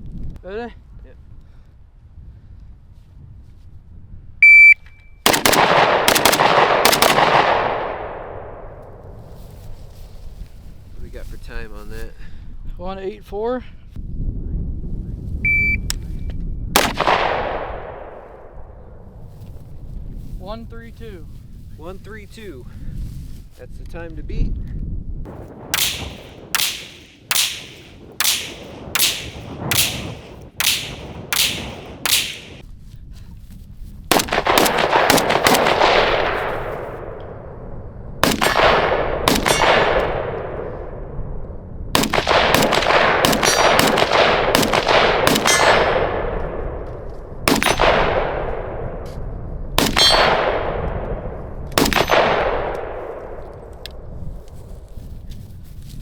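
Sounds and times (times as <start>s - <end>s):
rifle shots ringing: 5.2s - 8.7s, 16.8s - 18.4s, 25.6s - 32.6s, 34.1s - 36.9s, 38.2s - 40.7s, 42.0s - 46.7s, 47.4s - 49.0s, 49.8s - 53.4s.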